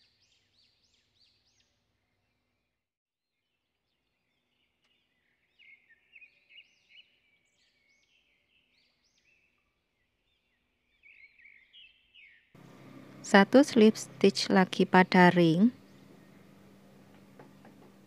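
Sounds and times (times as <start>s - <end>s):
faint bird chirps: 4.3s - 12.5s.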